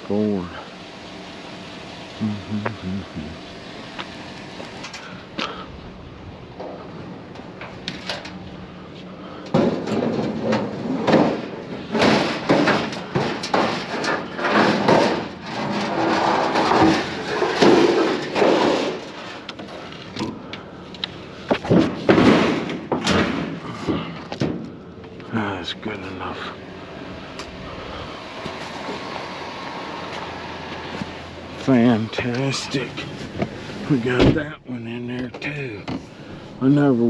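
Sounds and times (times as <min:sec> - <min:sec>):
scrap knocking and scraping: 0:09.5 - 0:20.4.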